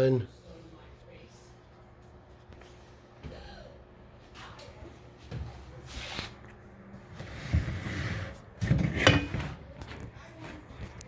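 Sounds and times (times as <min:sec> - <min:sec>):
hard object scraping: 0:07.1 - 0:09.6
rattling scrape: 0:07.2 - 0:09.6.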